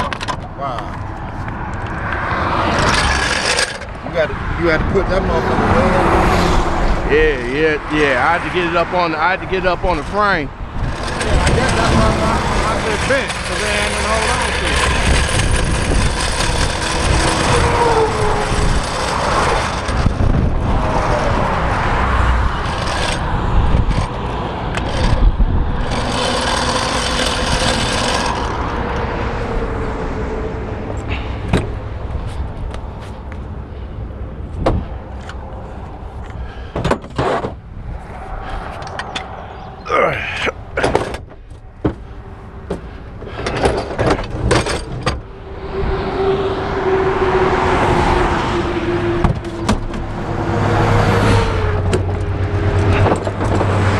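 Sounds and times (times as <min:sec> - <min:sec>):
highway traffic passing: 0:00.0 - 0:53.9
knocks and clanks: 0:01.7 - 0:04.0, 0:09.5 - 0:21.2, 0:31.1 - 0:32.8, 0:34.6 - 0:35.4, 0:36.2 - 0:37.6, 0:40.7 - 0:45.3, 0:49.2 - 0:50.1, 0:51.8 - 0:53.9.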